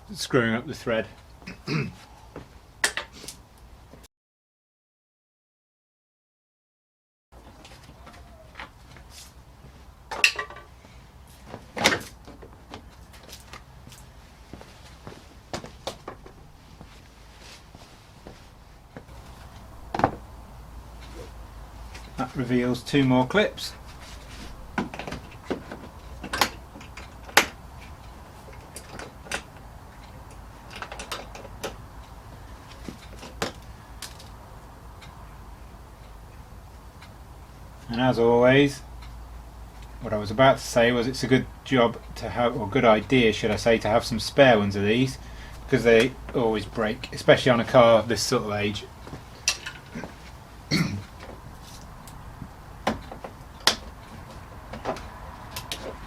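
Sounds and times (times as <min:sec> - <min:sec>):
person clearing throat: 0:01.4 - 0:02.1, 0:50.7 - 0:51.1.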